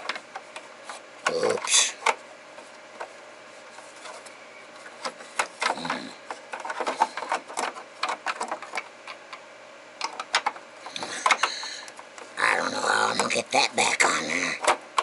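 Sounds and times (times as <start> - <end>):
small parts clicking and tapping: 5.0 - 9.4, 10.0 - 12.3.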